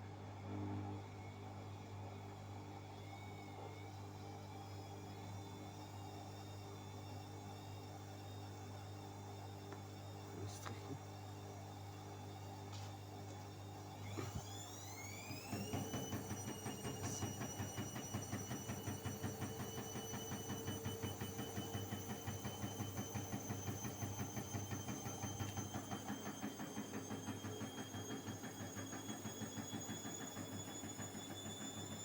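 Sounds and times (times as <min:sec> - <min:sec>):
washing machine spinning: 0:10.2 - 0:32.0.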